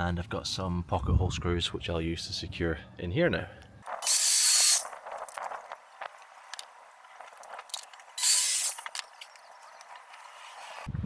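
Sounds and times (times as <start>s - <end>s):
short hissing bursts: 4.0s - 5.0s, 8.2s - 8.8s.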